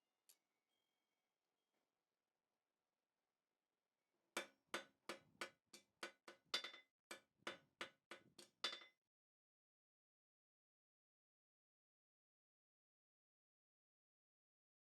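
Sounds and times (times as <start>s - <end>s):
hammer striking steel rivet: 4.4s - 9.0s.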